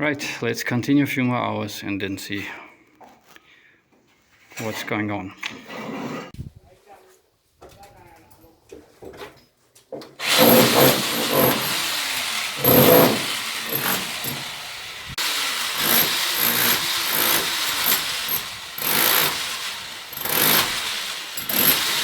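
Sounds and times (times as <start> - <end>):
angle grinder cutting concrete: 10.2 - 22.0.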